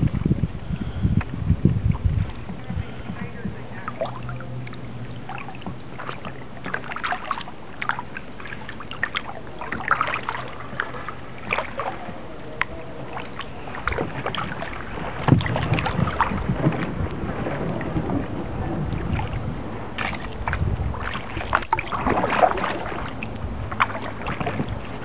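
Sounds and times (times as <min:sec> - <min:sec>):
paddle splashing in water: 0:00.0 - 0:25.0.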